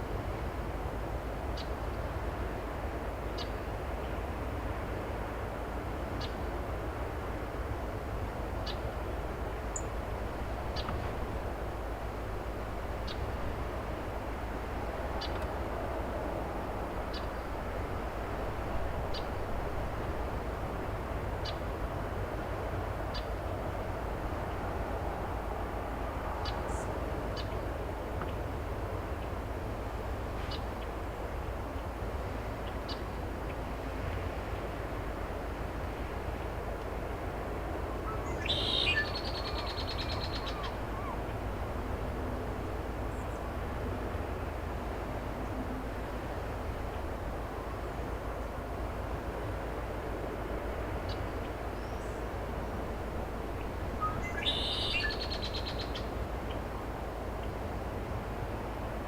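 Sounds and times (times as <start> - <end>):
bird call with rattling trill: 54.0 - 56.0.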